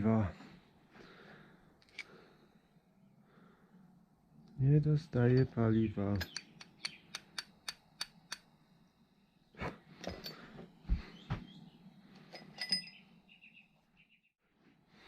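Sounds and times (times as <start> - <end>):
metal tools clinking: 10.0 - 10.5, 12.2 - 13.1.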